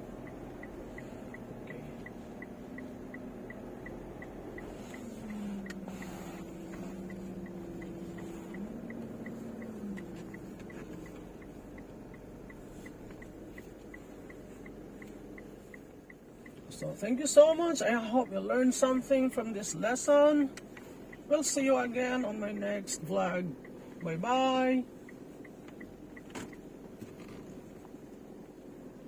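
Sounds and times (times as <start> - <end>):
low hum: 0.0 - 16.4
turn signal ticking: 0.0 - 29.0.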